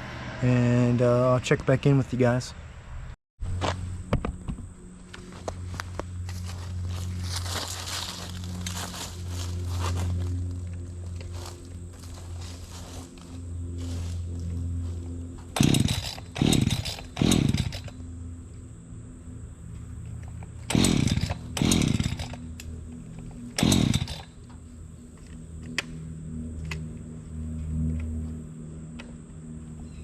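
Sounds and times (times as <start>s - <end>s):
chainsaw idling and revving: 10.6s - 18.3s, 20.4s - 24.6s.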